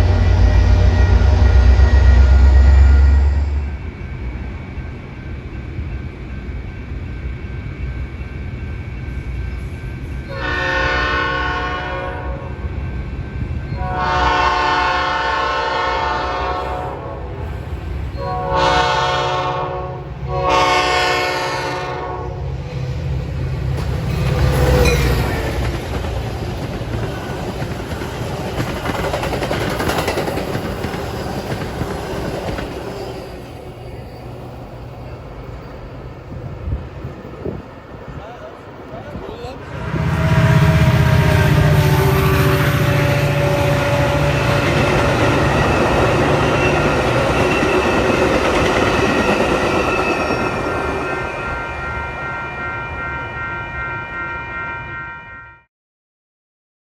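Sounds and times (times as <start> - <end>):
train air horn chord blasts: 0.0 - 3.7, 10.3 - 12.6, 13.8 - 22.5, 39.7 - 45.7, 50.9 - 55.7
diesel locomotive rumble: 0.0 - 51.6
train wheels clattering on rails: 23.5 - 34.6, 43.8 - 51.1.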